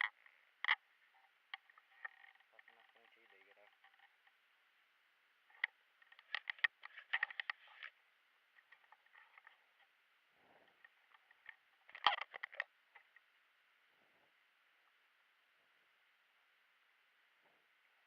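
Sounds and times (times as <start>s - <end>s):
sharp clicks and snaps: 5.5s - 8.0s, 10.7s - 13.2s.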